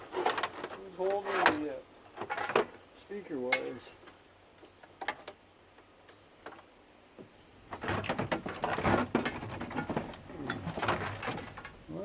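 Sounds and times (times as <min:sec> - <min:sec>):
clattering and rustling: 0:00.0 - 0:02.8, 0:07.7 - 0:11.8.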